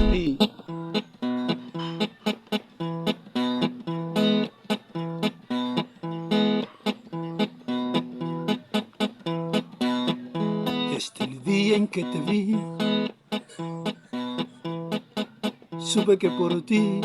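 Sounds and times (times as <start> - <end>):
guitar picking a melody: 0.0 - 17.0.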